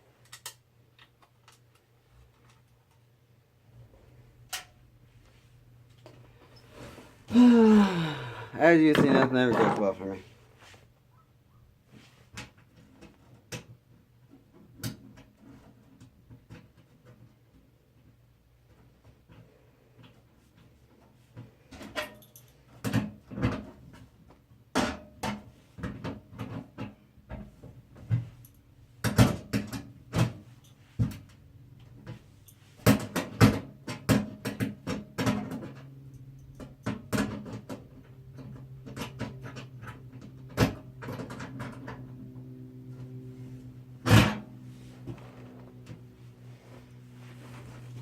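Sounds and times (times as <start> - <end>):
hardware clicking and clattering: 8.8 - 10.0
low steady hum: 35.7 - 48.0.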